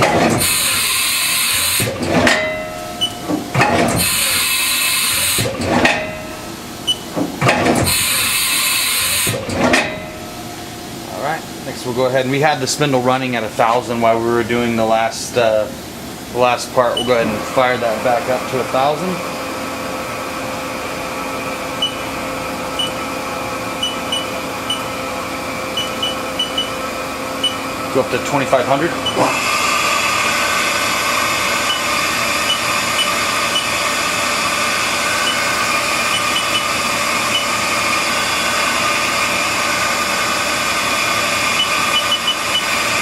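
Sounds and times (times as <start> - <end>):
short motor whine: 0.0 - 5.7, 7.7 - 9.5, 29.0 - 43.0
machine spindle hum: 0.0 - 43.0
toolchanger clunks: 1.7 - 4.3, 5.4 - 8.1, 9.2 - 10.2
high electronic beeps: 17.0 - 17.2, 21.8 - 22.1, 22.8 - 23.0, 23.8 - 24.9, 25.8 - 26.8, 27.4 - 27.6, 31.7 - 33.8, 35.2 - 35.5, 36.1 - 37.5.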